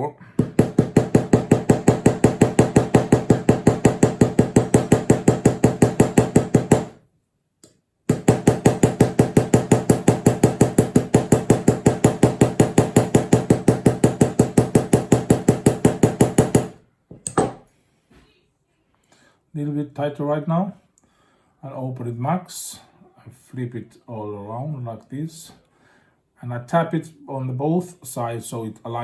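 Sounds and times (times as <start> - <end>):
hammer tapping metal pin: 7.6 - 17.6.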